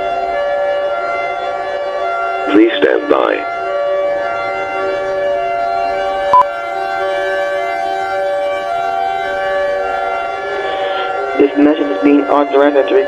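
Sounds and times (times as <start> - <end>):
steady multi-pitch siren tone: 3.5 - 13.0.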